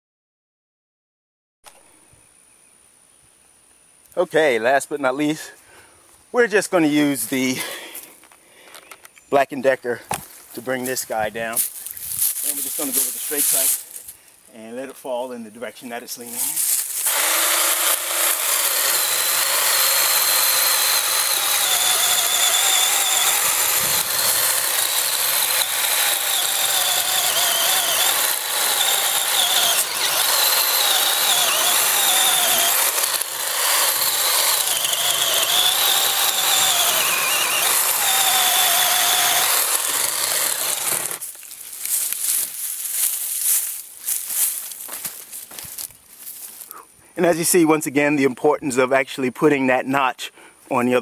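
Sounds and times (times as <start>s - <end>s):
electric chainsaw cutting wood: 12.4s - 13.8s, 16.4s - 43.7s.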